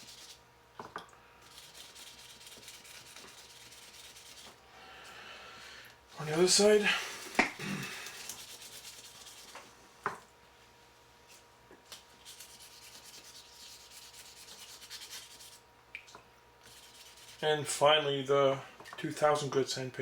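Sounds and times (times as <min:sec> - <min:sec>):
hand sanding strokes: 0:00.0 - 0:00.4, 0:01.4 - 0:04.6, 0:06.2 - 0:09.6, 0:12.2 - 0:15.6, 0:16.6 - 0:17.4.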